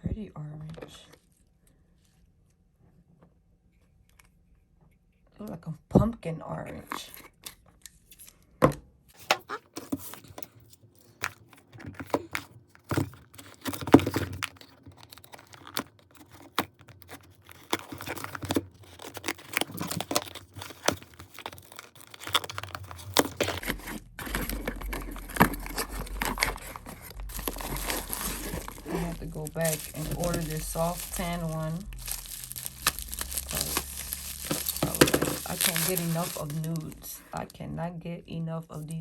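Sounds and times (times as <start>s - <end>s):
packaging crinkling and tearing: 9.2s - 37.4s
low steady hum: 22.6s - 39.0s.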